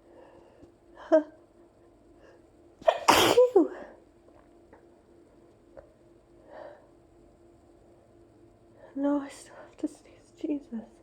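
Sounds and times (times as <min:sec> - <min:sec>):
person sneezing: 0:02.8 - 0:03.7
soft breath: 0:06.4 - 0:07.0.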